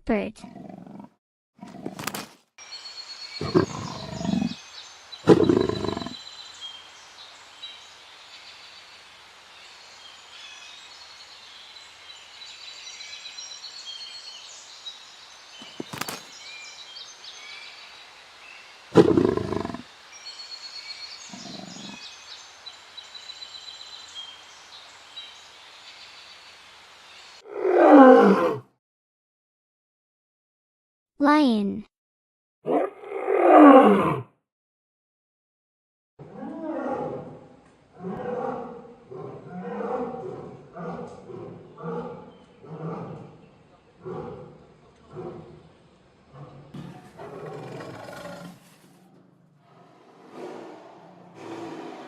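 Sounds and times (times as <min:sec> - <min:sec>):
leopard growling: 0:00.4 - 0:02.2, 0:03.4 - 0:04.6, 0:05.3 - 0:06.2, 0:19.0 - 0:19.9, 0:21.3 - 0:22.0, 0:32.7 - 0:34.2, 0:36.2 - 0:52.0
birds chirping faintly: 0:02.6 - 0:27.4.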